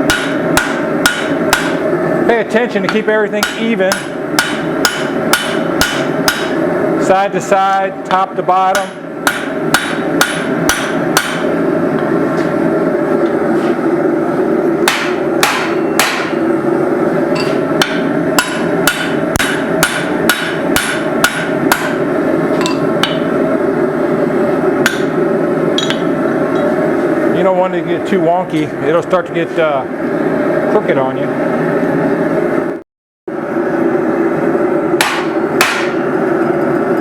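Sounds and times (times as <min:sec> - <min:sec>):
hammer striking steel on anvil: 0:00.0 - 0:01.8, 0:02.8 - 0:06.6, 0:08.7 - 0:11.5, 0:14.8 - 0:16.4, 0:17.4 - 0:22.0, 0:22.6 - 0:23.3, 0:24.8 - 0:25.2, 0:25.8 - 0:26.7, 0:35.0 - 0:36.1
steady hum: 0:00.0 - 0:37.0.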